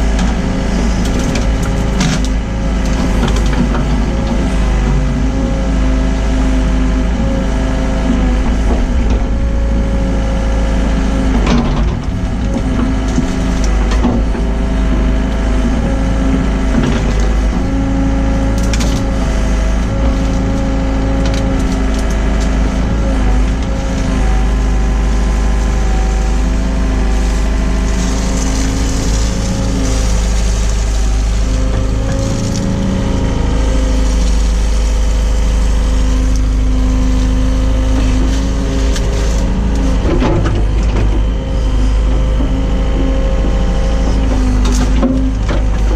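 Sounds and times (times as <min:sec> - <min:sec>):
excavator diesel engine running: 0:00.0 - 0:45.9
sharp cracks and knocks: 0:01.0 - 0:04.3, 0:18.4 - 0:24.7.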